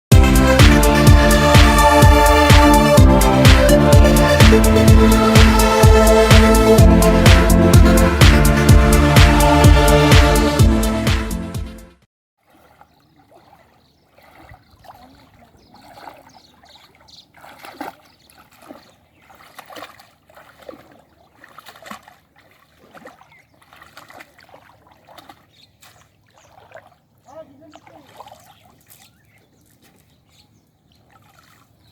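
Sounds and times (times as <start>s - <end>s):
shallow water splashing: 12.4s - 31.9s.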